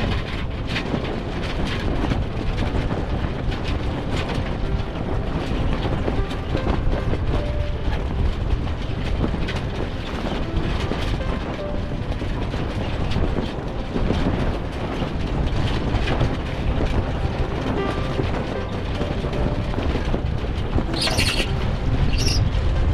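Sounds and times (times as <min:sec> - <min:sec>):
sea: 0:00.0 - 0:22.9
strong wind: 0:00.0 - 0:22.9.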